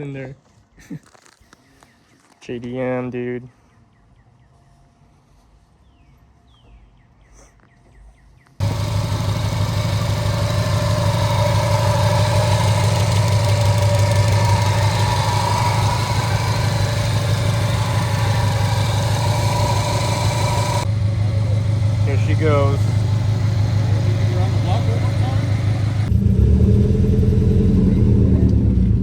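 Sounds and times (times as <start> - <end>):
car engine idling: 8.6 - 29.0.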